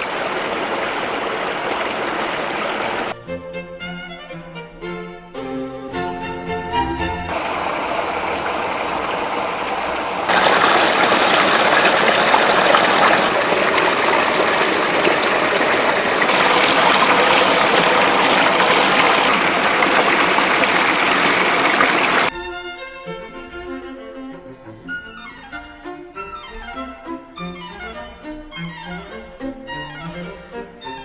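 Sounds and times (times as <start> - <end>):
water rushing: 0.0 - 3.2, 7.3 - 22.3.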